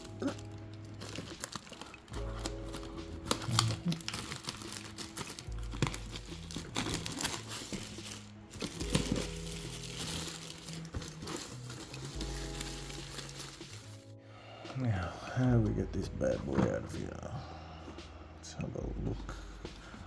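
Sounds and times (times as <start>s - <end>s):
box packaging crinkling: 0.0s - 14.2s
background music with bass line: 2.0s - 20.0s.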